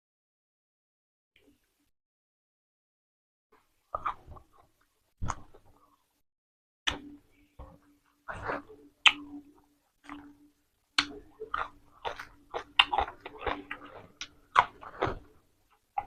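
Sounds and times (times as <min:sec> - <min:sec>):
crunchy chewing: 0:11.0 - 0:16.0.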